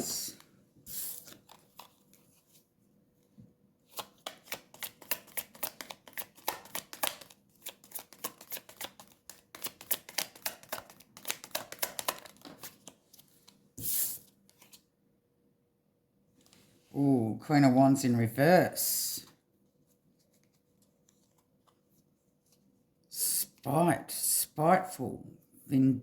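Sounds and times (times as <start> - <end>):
cards being shuffled: 0.0 - 2.6, 3.8 - 14.8.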